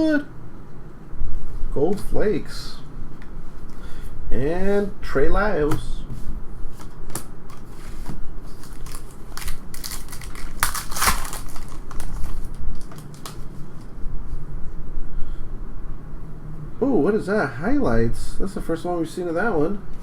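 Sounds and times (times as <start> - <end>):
plastic foil wrapper crinkling: 8.5 - 13.5.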